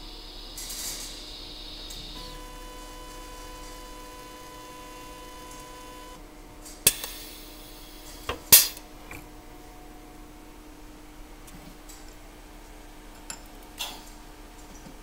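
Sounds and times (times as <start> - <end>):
electrical buzz of welding: 0.0 - 6.2, 6.8 - 8.9.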